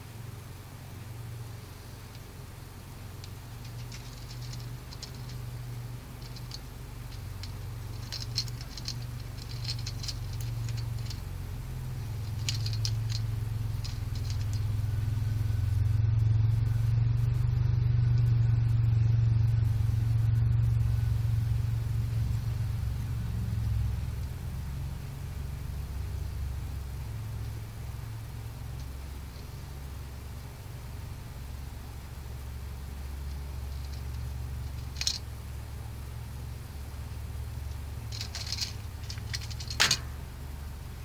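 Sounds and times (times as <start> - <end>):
steady low hum: 0.0 - 41.0
toy truck clicks and rattles: 3.2 - 15.0, 33.2 - 35.3, 37.6 - 40.2.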